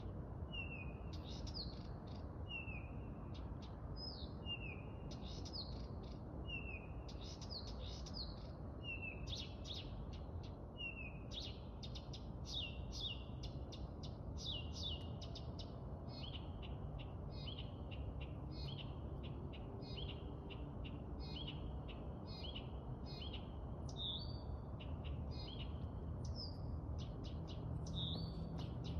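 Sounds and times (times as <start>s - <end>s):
songbird whistling and clicking: 25.4s - 28.9s.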